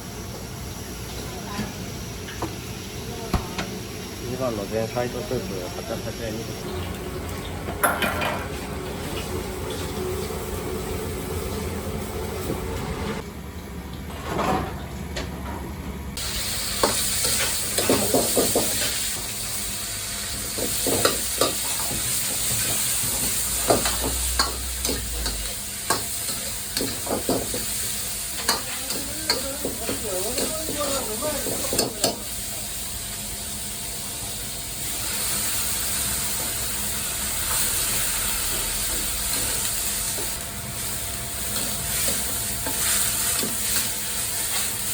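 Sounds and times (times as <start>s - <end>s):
food sizzling in a wok: 0.0s - 6.7s, 16.2s - 44.9s.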